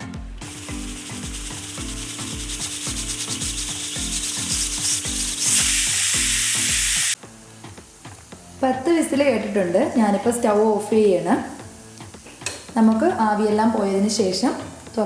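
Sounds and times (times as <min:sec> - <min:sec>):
background music with beat: 0:00.0 - 0:10.5, 0:11.3 - 0:15.0
pressure cooker steam whistle: 0:00.4 - 0:07.2.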